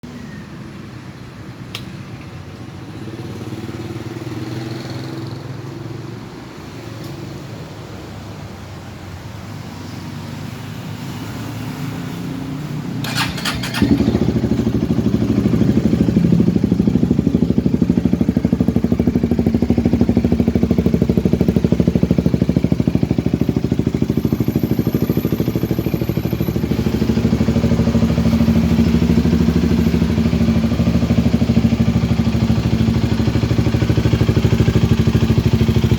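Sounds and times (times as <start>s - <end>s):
motorcycle engine idling: 13.0s - 35.9s.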